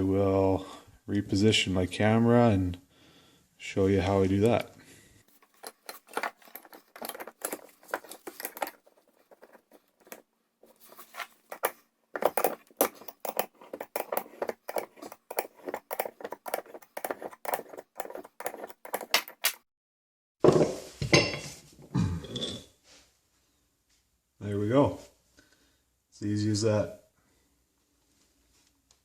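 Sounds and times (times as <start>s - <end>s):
metal parts clicking and tapping: 5.3s - 19.6s.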